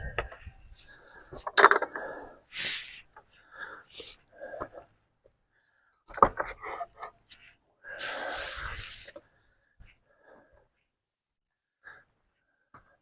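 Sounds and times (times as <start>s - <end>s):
person breathing out heavily: 7.8s - 9.2s.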